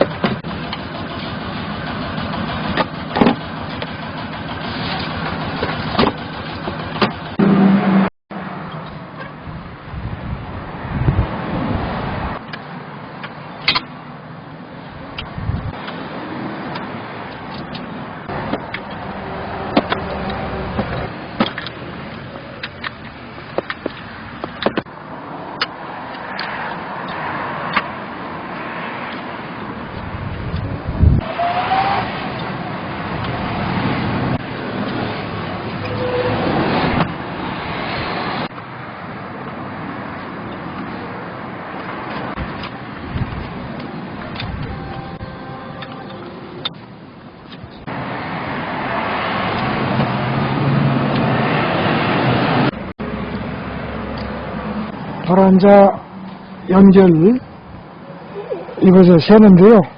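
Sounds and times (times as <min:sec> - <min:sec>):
utility vehicle engine running: 0:00.0 - 0:08.1, 0:14.9 - 0:24.9.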